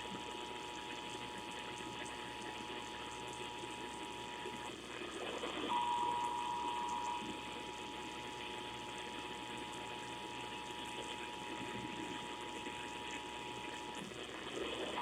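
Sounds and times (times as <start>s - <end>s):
two-tone alert signal: 5.7s - 7.4s.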